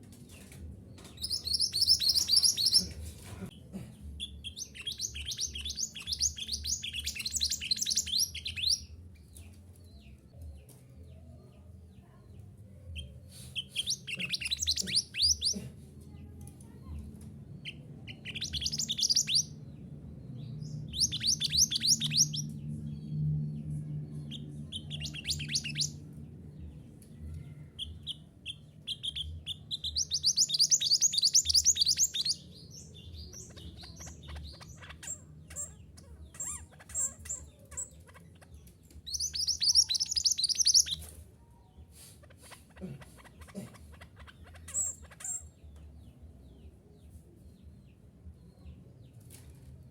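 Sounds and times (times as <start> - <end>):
faint low hum: 0.0 - 49.9
songbird chirping: 0.0 - 49.9.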